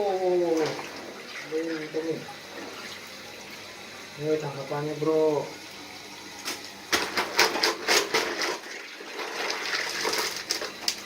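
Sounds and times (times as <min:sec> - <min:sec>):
water splashing: 0:00.0 - 0:03.7.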